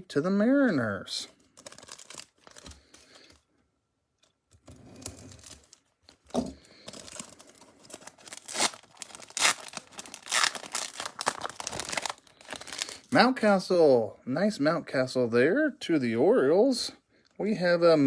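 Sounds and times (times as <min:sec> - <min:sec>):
plastic wrapper crinkling and tearing: 0:01.2 - 0:03.5, 0:04.9 - 0:13.1.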